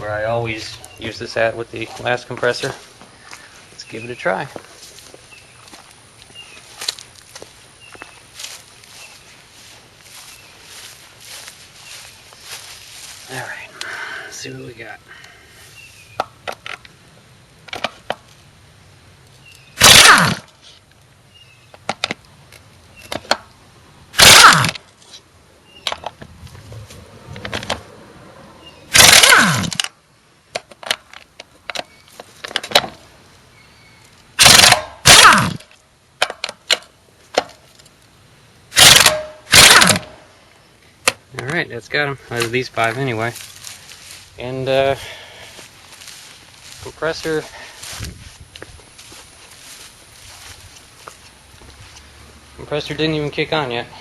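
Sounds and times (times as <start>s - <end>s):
pneumatic impact wrench hammering: 19.8s - 20.5s, 24.2s - 24.8s, 28.9s - 29.9s, 34.4s - 36.4s, 38.7s - 40.2s.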